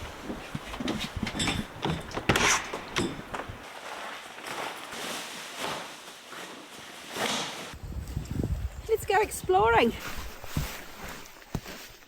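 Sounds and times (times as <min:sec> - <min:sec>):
footsteps: 0:00.0 - 0:06.5, 0:09.8 - 0:12.0.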